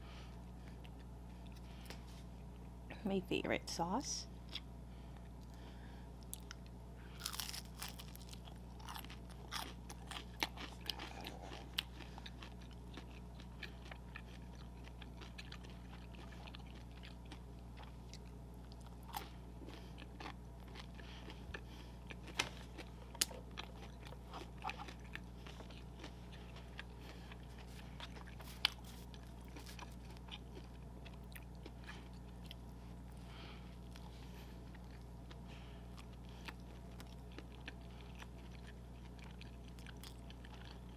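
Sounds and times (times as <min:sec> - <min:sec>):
low hum: 0:00.0 - 0:40.9
crunching bites and chewing: 0:04.4 - 0:40.9.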